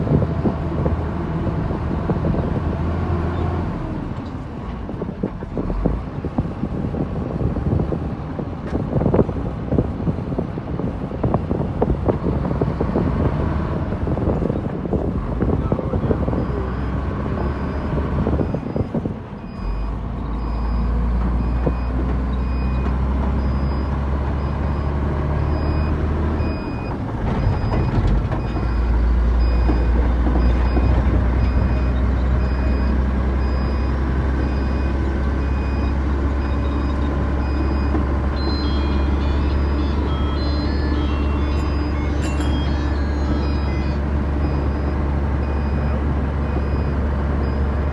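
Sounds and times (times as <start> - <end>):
diesel truck engine droning: 0.0 - 47.9
short electronic beep: 25.5 - 47.6.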